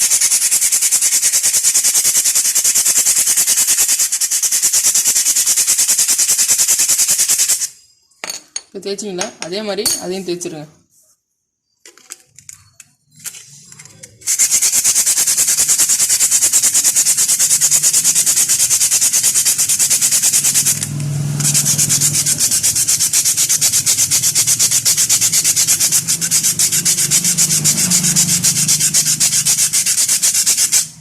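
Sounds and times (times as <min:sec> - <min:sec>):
brake pad rubbing on sandpaper: 0:14.2 - 0:31.0.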